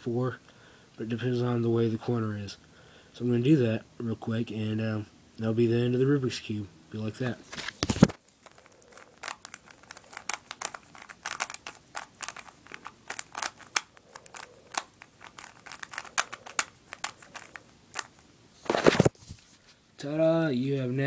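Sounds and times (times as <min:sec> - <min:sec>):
puzzle cube clicking and rattling: 0:07.8 - 0:18.3.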